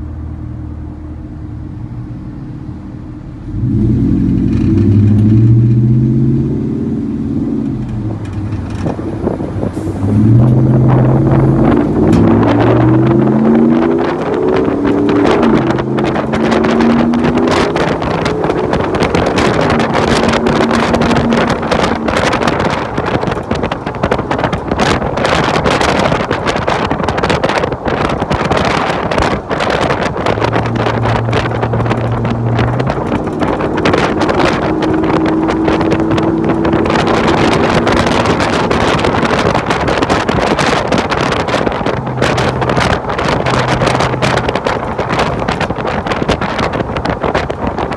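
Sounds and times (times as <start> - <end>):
car engine accelerating: 0.0 - 47.9
wind buffeting microphone: 3.3 - 47.9.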